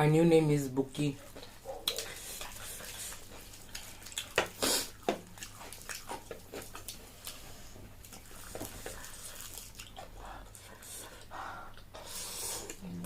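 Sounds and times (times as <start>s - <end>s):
wet mouth smacks and squishes: 1.8s - 2.6s, 3.3s - 7.4s.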